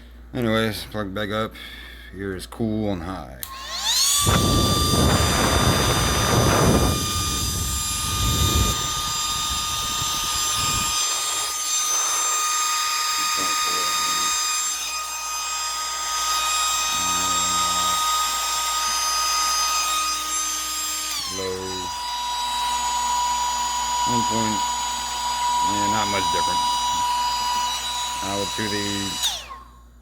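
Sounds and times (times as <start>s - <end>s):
hair dryer fan whine: 3.4s - 30.0s.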